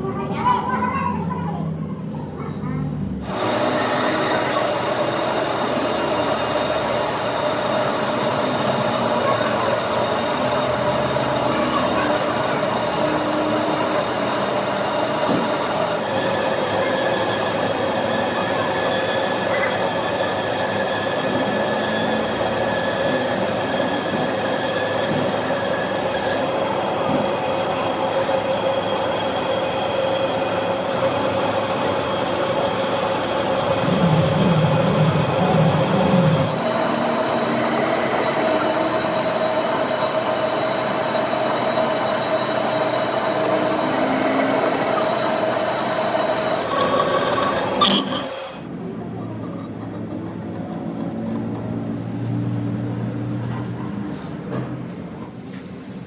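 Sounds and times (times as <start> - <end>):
workshop machine whining: 3.0 - 56.0.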